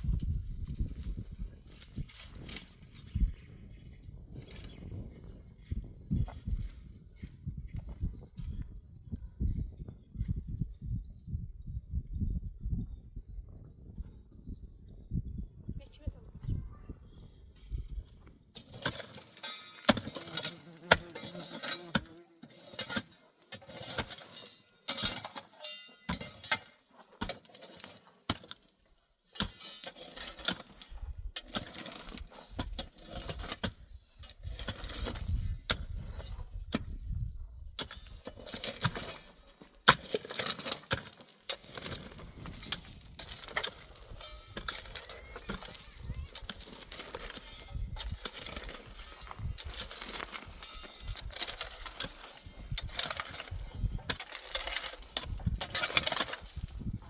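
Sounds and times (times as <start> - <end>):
hard objects clinking and knocking: 18.6 - 36.4, 37.8 - 57.0.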